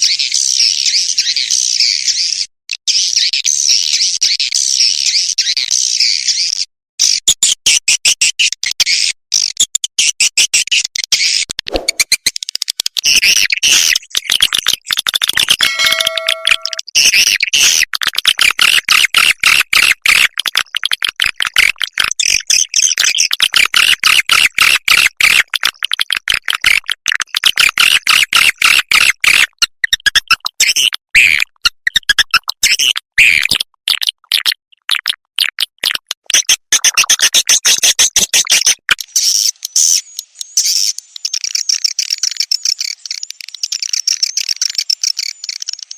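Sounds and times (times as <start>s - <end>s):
swiftlet chirping and twittering: 15.4s - 16.8s
steady electronic tone: 15.6s - 16.8s.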